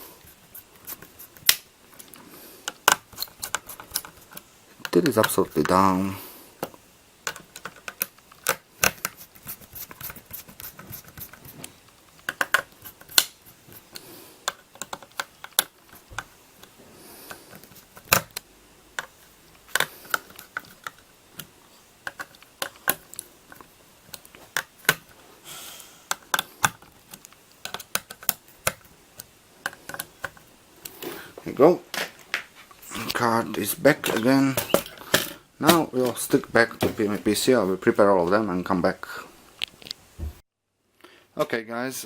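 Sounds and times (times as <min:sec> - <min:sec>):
screwdriver and metal parts clicking: 0:00.6 - 0:05.9, 0:06.6 - 0:18.4.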